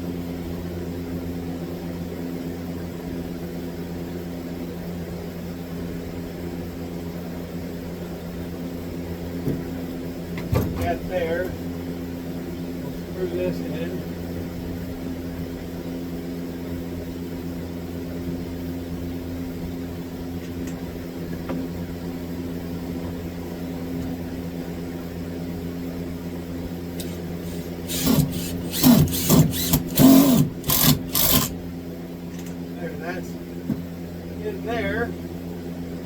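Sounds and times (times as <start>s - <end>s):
steady low hum: 0.0s - 36.0s
power drill driving a screw: 27.0s - 31.6s.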